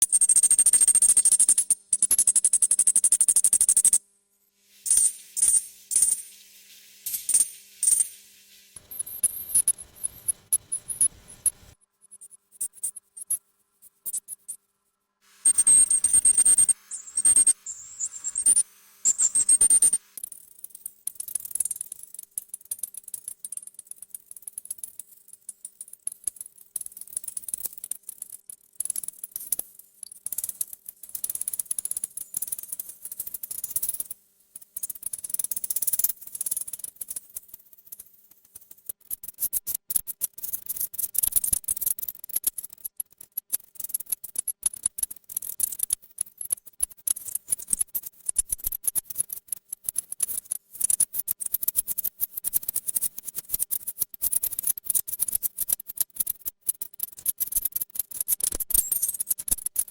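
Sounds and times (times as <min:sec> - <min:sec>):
bats chirping and squeaking: 0:04.8 - 0:08.2, 0:15.4 - 0:20.1.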